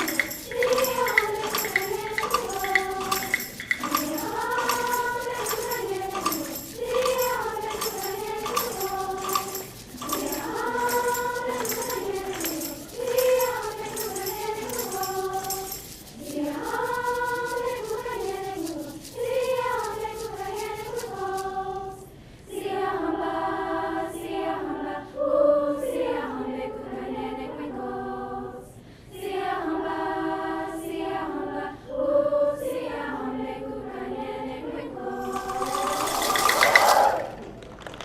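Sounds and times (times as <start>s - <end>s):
shaken percussion ticks: 0.0s - 21.8s, 35.2s - 38.0s
choir singing: 0.0s - 37.4s.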